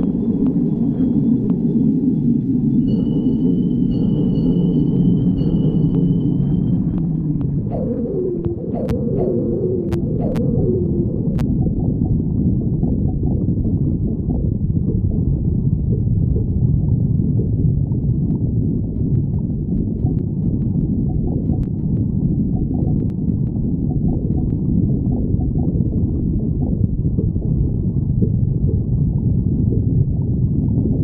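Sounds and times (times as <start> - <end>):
stomach growling: 6.8 - 31.0.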